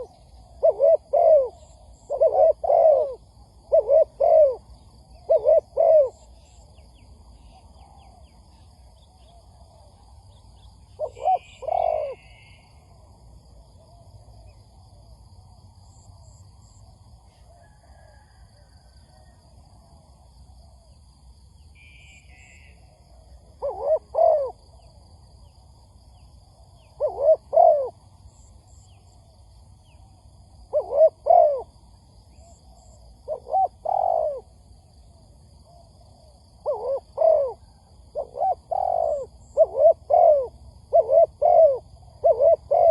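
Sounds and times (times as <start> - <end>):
dove cooing: 0.0 - 6.9, 11.0 - 13.1, 22.3 - 24.9, 26.7 - 28.8, 30.6 - 34.6, 35.7 - 42.9.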